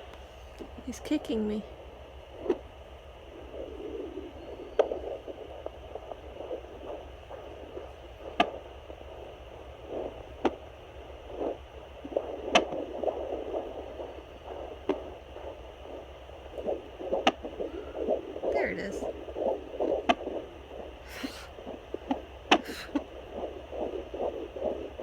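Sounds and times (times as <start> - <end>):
fetal doppler swishing: 11.3 - 25.0.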